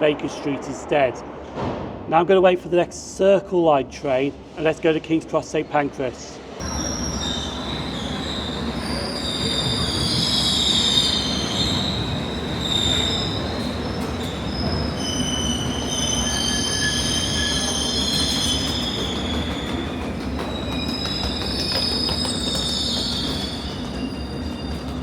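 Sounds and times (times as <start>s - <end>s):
train rumbling on rails: 6.4s - 25.0s
train wheels squealing: 6.6s - 25.0s.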